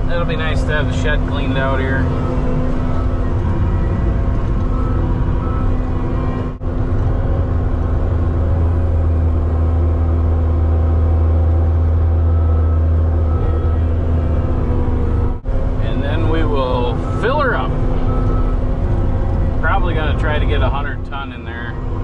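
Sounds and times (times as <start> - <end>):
heavy vehicle engine droning: 0.0 - 22.0.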